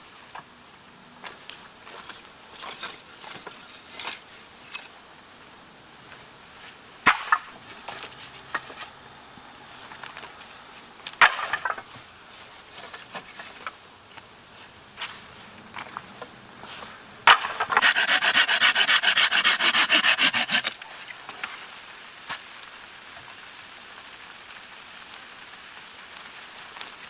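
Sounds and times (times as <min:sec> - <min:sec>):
sticks and branches breaking: 0:07.0 - 0:09.0, 0:09.7 - 0:12.1.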